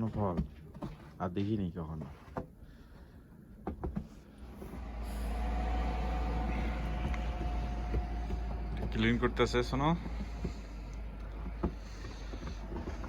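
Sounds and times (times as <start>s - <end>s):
truck engine rumble: 4.2s - 13.0s.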